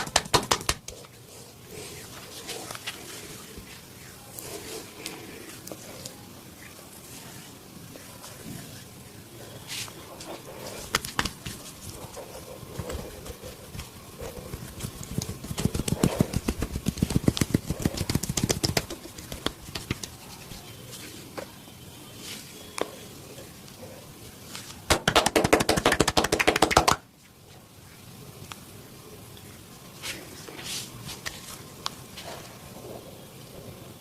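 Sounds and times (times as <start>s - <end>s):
hands slapping in massage: 0.0s - 1.0s, 10.8s - 11.7s, 14.5s - 20.2s, 24.9s - 27.0s.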